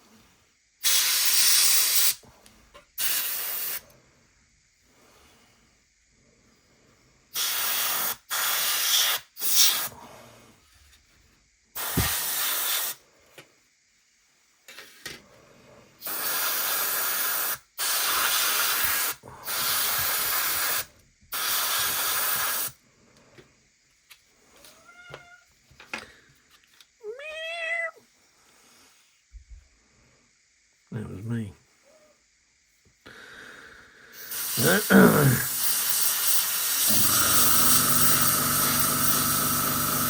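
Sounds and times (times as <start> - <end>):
spray paint hissing: 0.8 - 2.2, 3.0 - 3.8, 7.4 - 9.9, 11.8 - 13.0, 16.0 - 22.8, 34.2 - 40.0.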